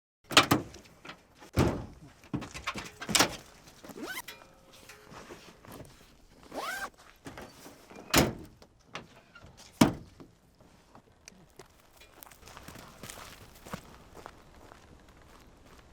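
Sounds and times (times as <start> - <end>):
short rising squeak: 6.5 - 6.9.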